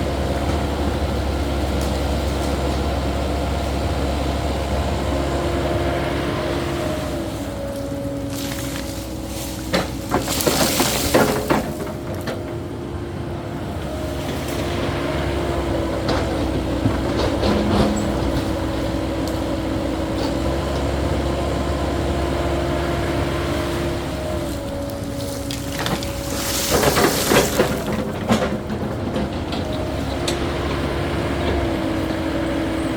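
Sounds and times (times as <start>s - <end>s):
excavator engine and hydraulics whine: 0.0s - 32.9s
clattering knocks: 8.4s - 12.7s, 25.1s - 30.9s.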